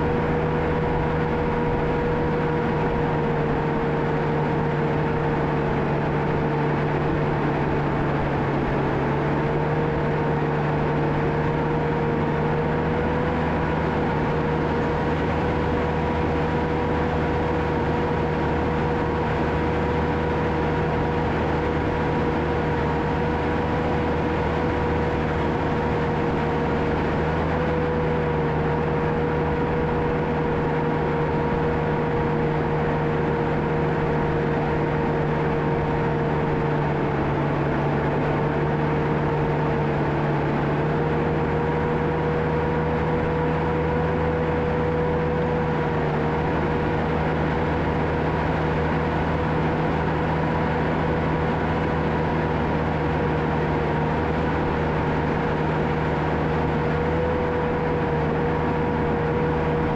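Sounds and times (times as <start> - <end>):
bulldozer diesel drone: 0.0 - 59.9.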